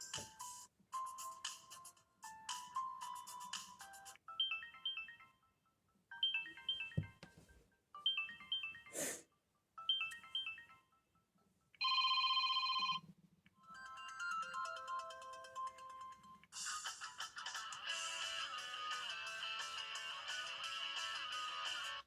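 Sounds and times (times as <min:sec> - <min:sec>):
chiming ringtone melody: 0:02.5 - 0:09.0, 0:09.8 - 0:13.0, 0:13.6 - 0:16.4.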